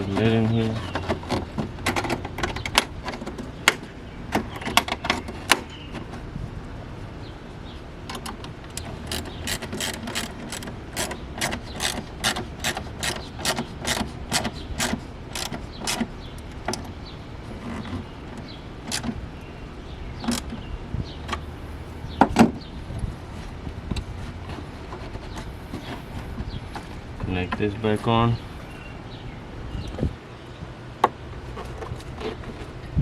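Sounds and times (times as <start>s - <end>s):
hand ratchet clicking: 8.8s - 16.0s.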